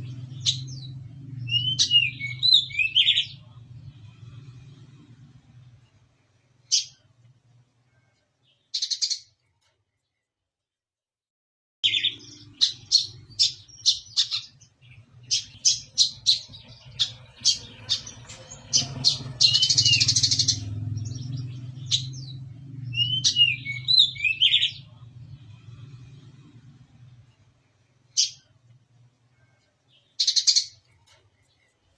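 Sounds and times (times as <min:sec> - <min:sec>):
bird chirping and trilling: 0:00.0 - 0:03.6, 0:06.6 - 0:07.1, 0:08.5 - 0:09.4, 0:11.8 - 0:25.4, 0:27.3 - 0:28.6, 0:29.4 - 0:31.7
low steady hum: 0:00.0 - 0:08.5, 0:12.1 - 0:30.2.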